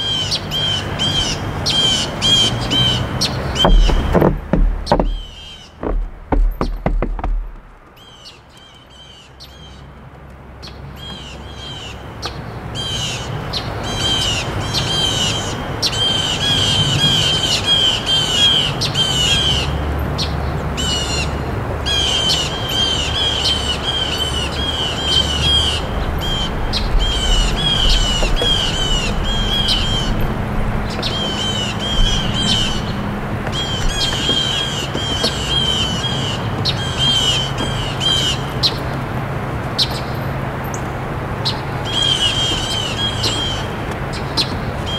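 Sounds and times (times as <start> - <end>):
small birds chirping: 0.1 - 9.8, 21.9 - 39.0
low background rumble: 3.5 - 7.9.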